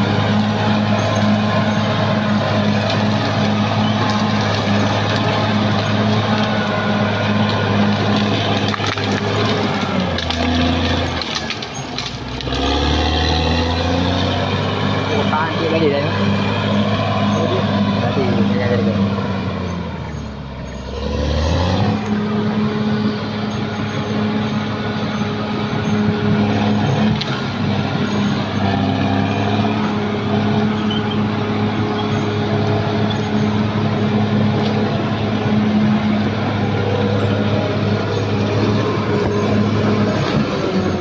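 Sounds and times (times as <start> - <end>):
bulldozer diesel engine running: 0.0 - 41.0.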